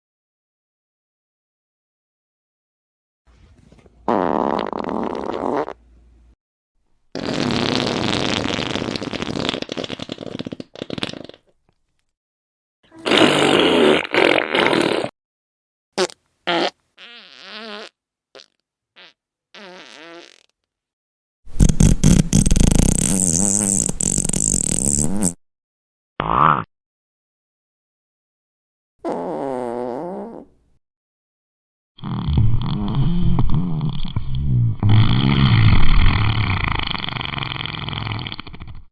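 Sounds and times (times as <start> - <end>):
fart sound effects: 4.1 - 5.8, 7.2 - 11.5, 12.9 - 15.2, 16.0 - 20.6, 21.5 - 25.4, 29.0 - 30.5, 32.0 - 38.8.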